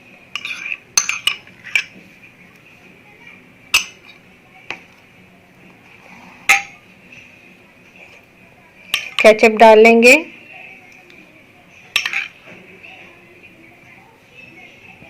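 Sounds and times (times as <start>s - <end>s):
spoon clinking against bowl: 0.4s - 1.9s, 3.7s - 4.2s, 6.5s - 6.8s, 8.9s - 9.3s, 11.9s - 12.4s.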